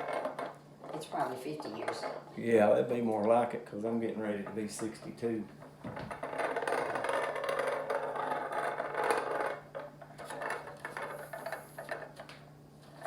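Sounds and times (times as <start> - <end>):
hand coffee grinder grinding: 5.9 - 12.2.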